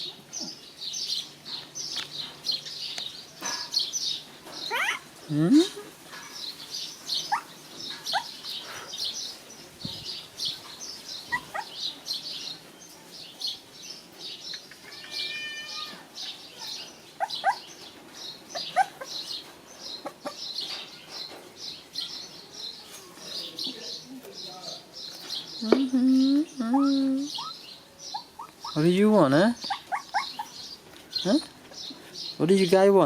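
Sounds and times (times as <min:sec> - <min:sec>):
birds chirping: 0:00.0 - 0:33.0
puppies whimpering: 0:04.7 - 0:05.9, 0:07.2 - 0:07.5, 0:11.3 - 0:11.8, 0:16.5 - 0:17.7, 0:18.5 - 0:19.2, 0:26.6 - 0:29.0, 0:29.6 - 0:30.6.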